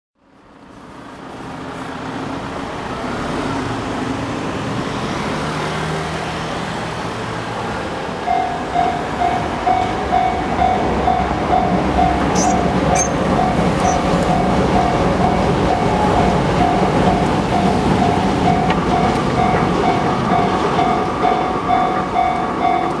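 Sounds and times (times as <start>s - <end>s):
road traffic noise: 0.2s - 23.0s
level crossing warning bell: 8.1s - 23.0s.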